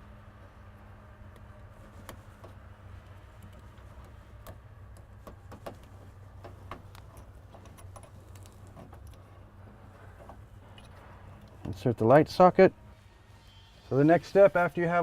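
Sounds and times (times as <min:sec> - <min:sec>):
faint electrical hum: 0:00.0 - 0:15.0
wire connectors clicking onto terminals: 0:03.4 - 0:09.2.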